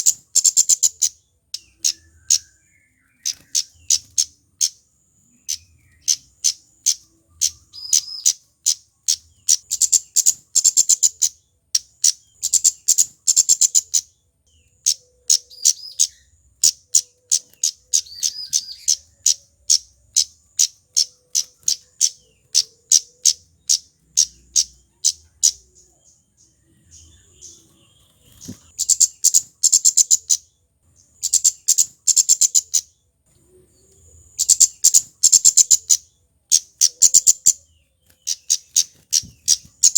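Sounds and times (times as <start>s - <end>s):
bird singing high ticking notes: 0.0s - 39.9s.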